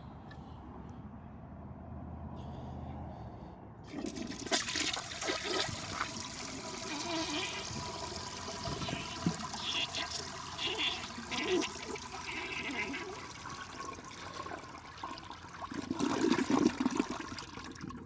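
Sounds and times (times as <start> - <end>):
toilet flushing: 3.9 - 18.0.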